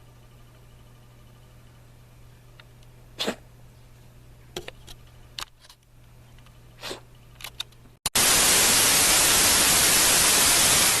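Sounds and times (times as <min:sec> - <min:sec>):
cat coughing: 0:03.2 - 0:03.5
loud static hiss: 0:08.1 - 0:11.0.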